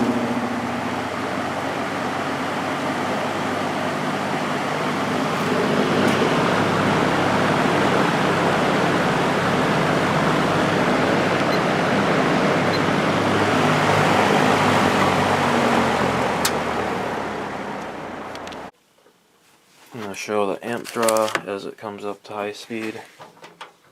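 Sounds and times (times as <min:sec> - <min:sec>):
fan air rushing: 0:00.0 - 0:18.7
low motor hum: 0:00.0 - 0:18.7.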